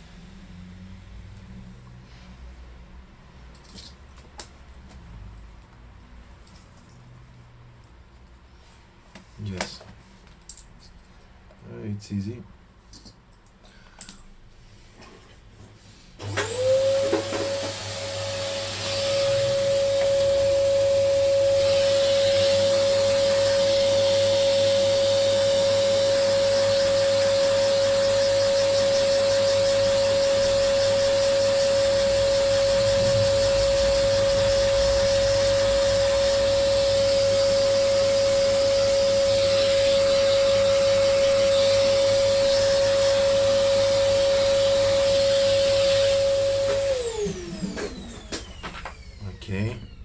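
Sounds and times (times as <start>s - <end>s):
electric duster motor whine: 16.2s - 50.0s.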